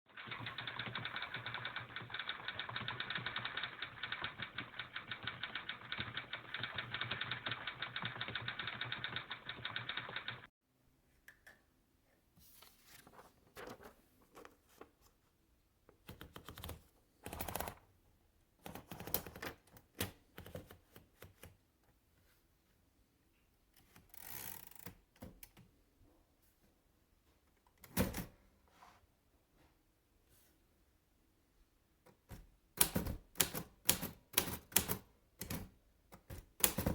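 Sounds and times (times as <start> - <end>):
rapid typewriter clicking: 0.1 - 10.5, 32.8 - 35.7, 36.3 - 36.9.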